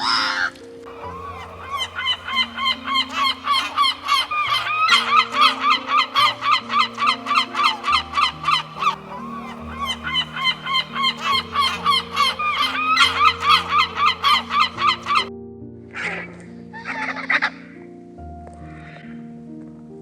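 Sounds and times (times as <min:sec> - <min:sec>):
music with long low notes: 0:00.0 - 0:17.0
animal calling rapidly: 0:00.9 - 0:15.3.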